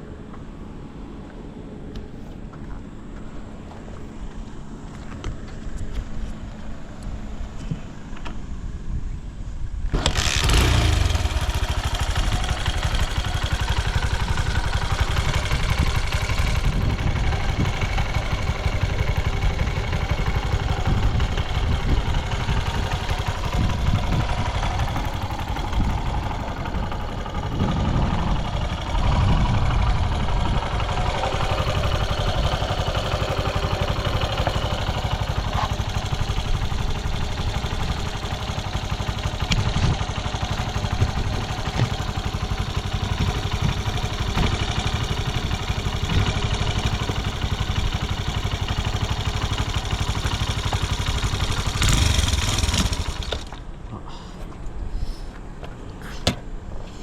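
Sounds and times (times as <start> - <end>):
motorcycle engine idling: 9.9 - 54.3.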